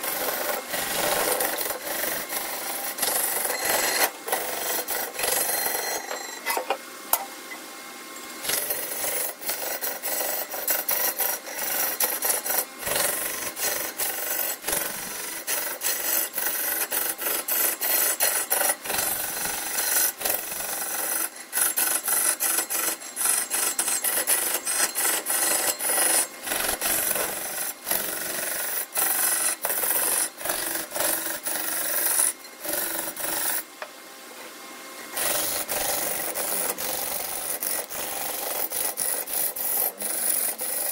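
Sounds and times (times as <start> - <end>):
rasping of wood on lathe: 0.0 - 6.1, 8.5 - 33.6, 35.2 - 40.9.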